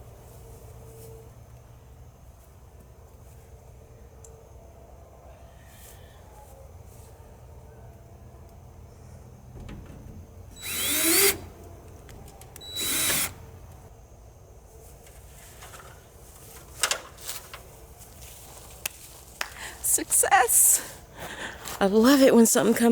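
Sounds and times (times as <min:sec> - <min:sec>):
cordless drill whining: 0:09.6 - 0:13.9.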